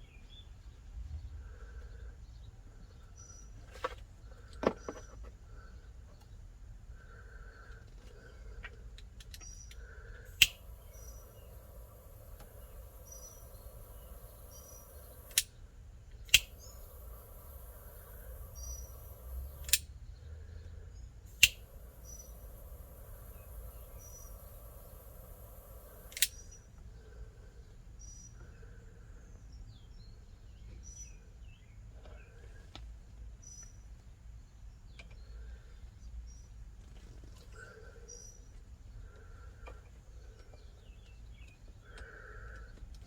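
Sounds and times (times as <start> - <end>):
low background hum: 0.0 - 43.0
sharp clicks: 9.2 - 15.5, 16.2 - 19.9, 21.3 - 26.6
faint small bird chirps: 9.3 - 32.7, 33.4 - 42.9.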